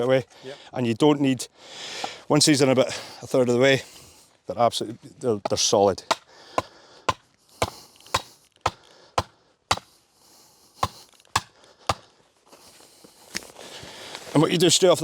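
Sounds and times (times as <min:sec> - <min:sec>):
peg being hammered into ground: 0:05.5 - 0:10.0, 0:10.8 - 0:12.1.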